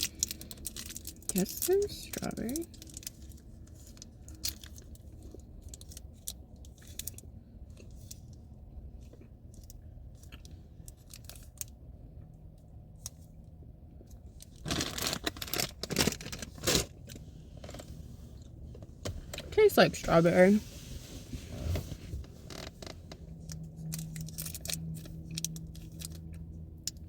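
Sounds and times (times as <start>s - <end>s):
plastic wrapper crinkling: 0.0s - 5.1s, 14.6s - 16.8s.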